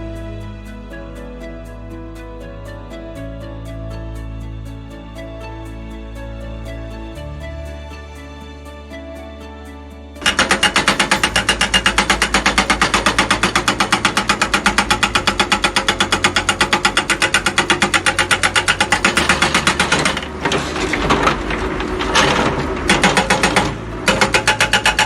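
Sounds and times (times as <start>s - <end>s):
hydraulic breaker hammering: 10.3s - 25.0s.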